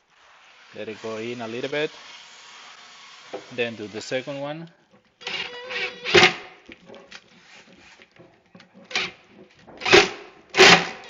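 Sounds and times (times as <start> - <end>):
screw being driven into wood: 5.2 - 11.0.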